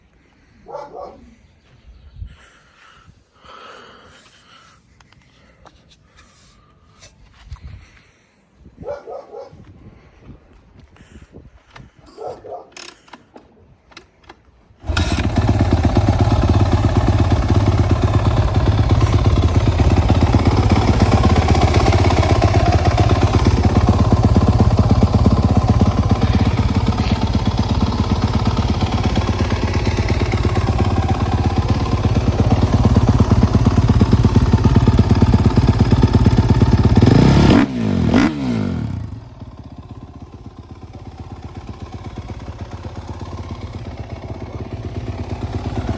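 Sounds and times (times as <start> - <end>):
motorcycle engine revving: 14.8 - 45.9.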